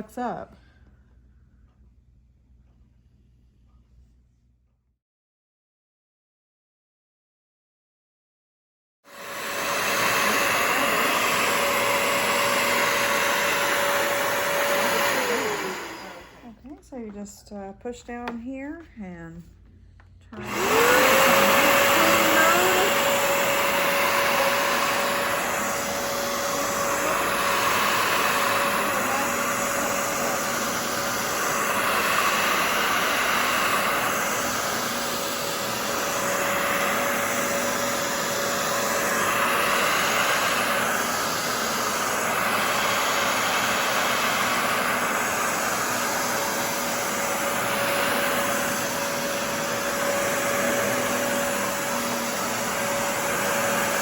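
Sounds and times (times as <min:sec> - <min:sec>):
carpet cleaner running: 0:09.1 - 0:17.3, 0:20.0 - 0:54.0.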